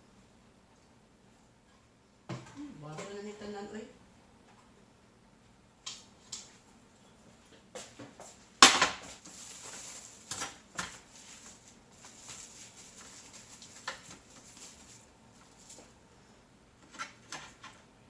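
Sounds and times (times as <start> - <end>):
rustling: 9.0 - 16.0.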